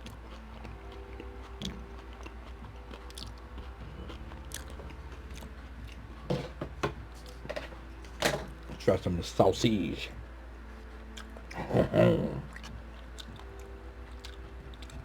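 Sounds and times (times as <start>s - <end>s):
chewing food: 0.0s - 6.4s, 10.8s - 15.0s.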